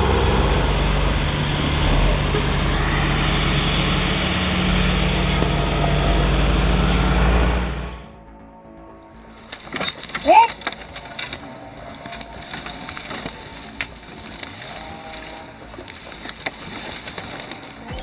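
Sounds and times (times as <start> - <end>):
heavy diesel engine running: 0.0 - 7.5.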